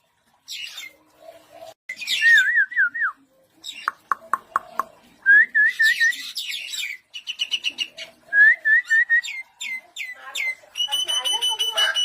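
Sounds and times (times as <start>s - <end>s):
myna birds whistling: 5.3s - 12.0s.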